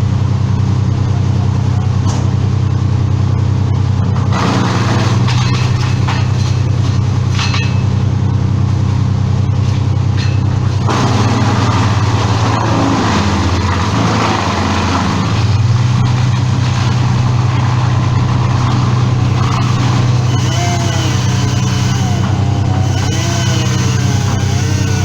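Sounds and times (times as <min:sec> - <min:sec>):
large engine running: 0:00.0 - 0:25.0
loud noisy layer: 0:10.7 - 0:25.0.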